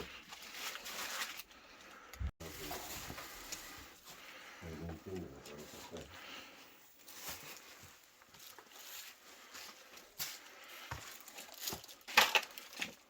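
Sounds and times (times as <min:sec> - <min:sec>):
footsteps tapping and rustling: 0:07.0 - 0:12.0.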